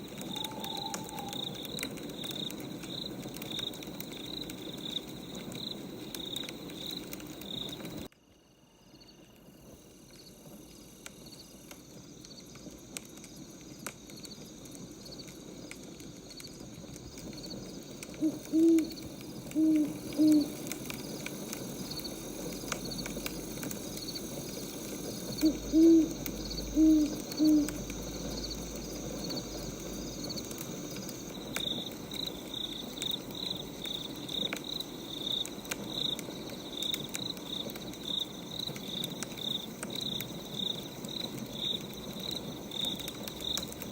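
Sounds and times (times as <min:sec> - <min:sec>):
owl hooting: 0:00.0 - 0:01.9, 0:18.1 - 0:20.9, 0:25.1 - 0:28.3
wood fire crackling: 0:00.0 - 0:08.1, 0:09.3 - 0:43.9
crickets chirping: 0:00.0 - 0:43.9.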